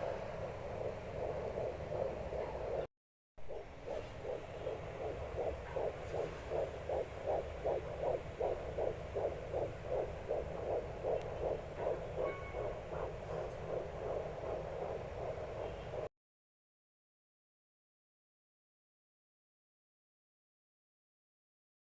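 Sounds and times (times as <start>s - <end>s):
fetal heartbeat pulsing: 0.0s - 16.1s
low hum: 0.0s - 16.1s.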